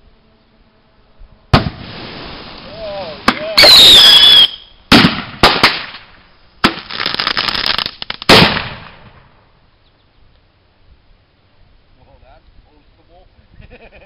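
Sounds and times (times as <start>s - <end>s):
firecrackers exploding: 1.5s - 9.4s
crackling: 1.5s - 9.5s.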